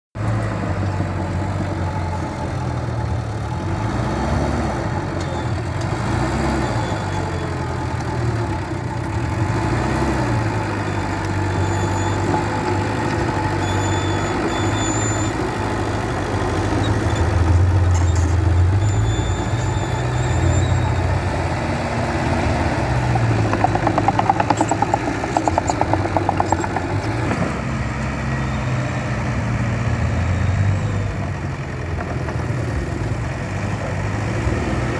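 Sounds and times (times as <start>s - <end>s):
bulldozer diesel engine under load: 0.2s - 34.9s
rapid clattering: 23.3s - 27.3s.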